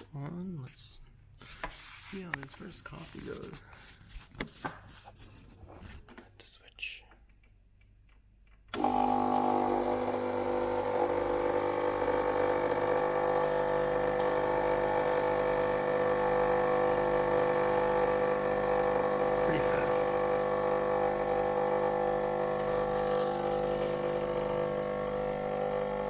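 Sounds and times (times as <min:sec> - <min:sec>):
espresso machine pump buzzing: 0:08.7 - 0:26.0.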